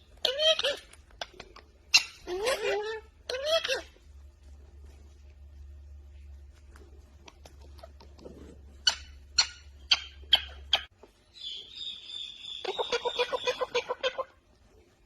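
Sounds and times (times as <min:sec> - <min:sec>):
animal squeaks: 0:00.0 - 0:04.0, 0:07.7 - 0:10.9, 0:12.2 - 0:14.3
low hum: 0:00.0 - 0:15.0.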